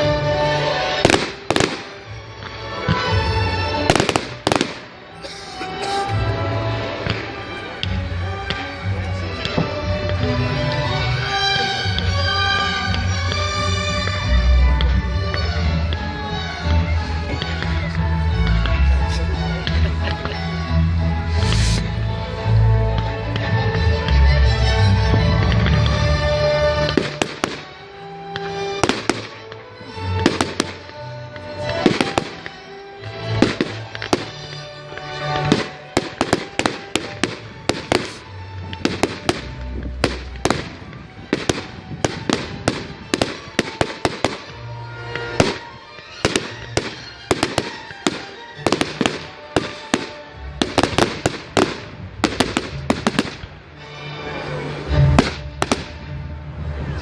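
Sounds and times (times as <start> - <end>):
fireworks bangs and crackles: 0.0 - 11.1, 25.1 - 53.6, 55.0 - 57.0
music playing: 0.0 - 57.0.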